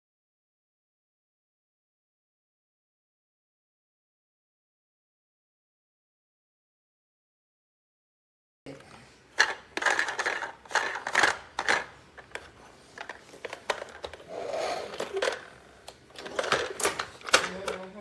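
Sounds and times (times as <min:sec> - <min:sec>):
plastic toy clattering: 0:09.4 - 0:18.0.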